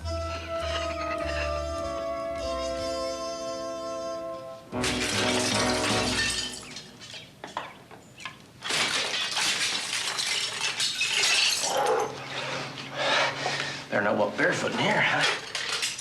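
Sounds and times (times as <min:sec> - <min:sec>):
music: 0:00.0 - 0:06.6
glass pieces clinking: 0:04.8 - 0:12.4, 0:15.1 - 0:16.0
glass shattering: 0:04.8 - 0:12.4, 0:15.1 - 0:16.0.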